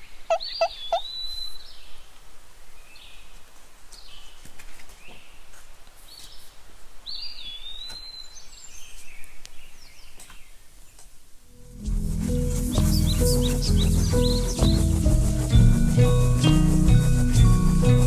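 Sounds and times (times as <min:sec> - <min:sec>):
bird chirps and calls: 0:00.3 - 0:02.0, 0:12.3 - 0:17.3
held whistled note: 0:11.6 - 0:18.0.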